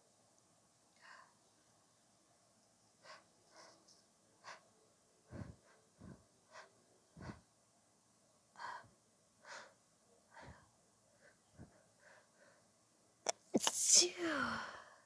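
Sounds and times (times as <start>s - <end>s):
muffled puffs of breath: 5.3s - 7.5s
woman sniffing and breathing: 5.3s - 7.5s, 13.3s - 14.7s.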